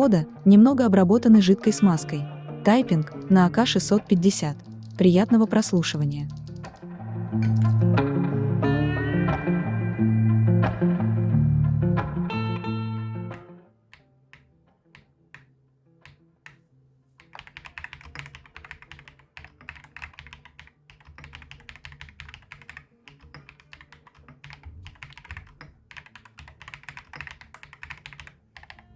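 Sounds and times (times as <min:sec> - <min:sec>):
mechanical keyboard typing: 0:02.9 - 0:07.8, 0:17.2 - 0:28.9.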